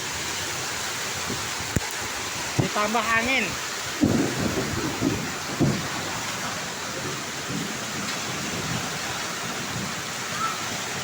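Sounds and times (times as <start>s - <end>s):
hail and heavy rain: 0.0s - 11.0s.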